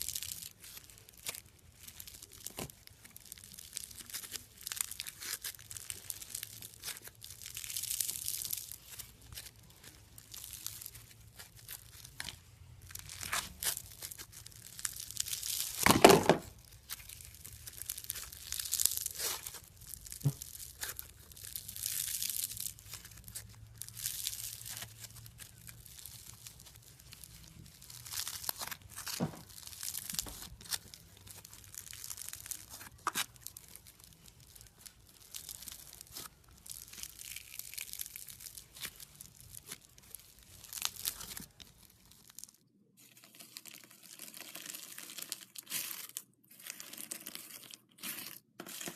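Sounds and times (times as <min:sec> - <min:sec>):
slime squishing and crackling: 0:00.0 - 0:48.9.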